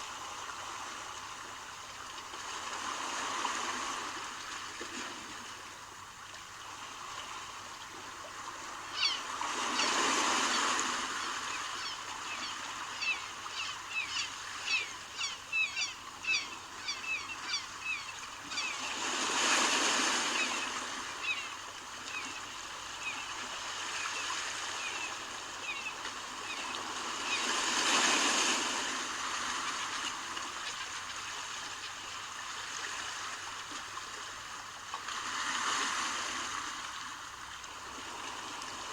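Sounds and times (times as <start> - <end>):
sea waves washing in: 17.8 - 31.0.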